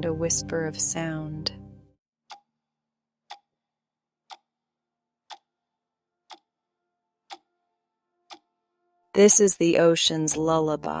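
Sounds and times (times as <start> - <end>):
sharp clock-like ticks: 2.3 - 2.5, 3.3 - 3.5, 4.3 - 4.5, 5.3 - 5.5, 6.3 - 6.5.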